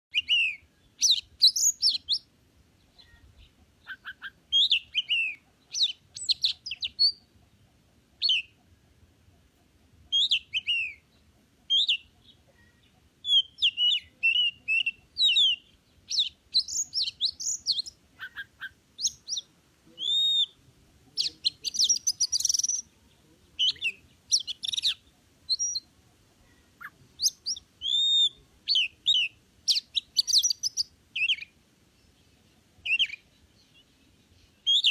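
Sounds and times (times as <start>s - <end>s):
bird singing whistled phrases: 0.1s - 2.2s, 3.9s - 7.2s, 10.1s - 11.0s, 13.2s - 20.6s, 21.2s - 22.9s, 23.6s - 25.8s, 26.8s - 31.5s, 32.9s - 33.2s, 34.6s - 34.9s.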